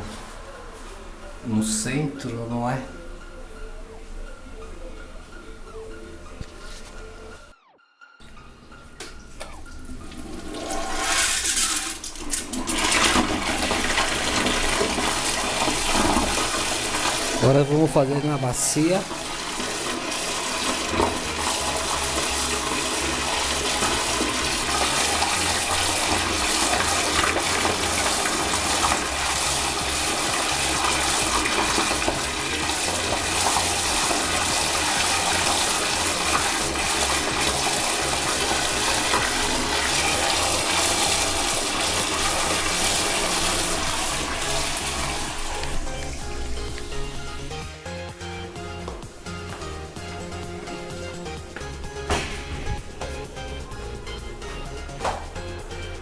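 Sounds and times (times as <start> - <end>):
water running into toilet bowl: 9.8 - 47.5.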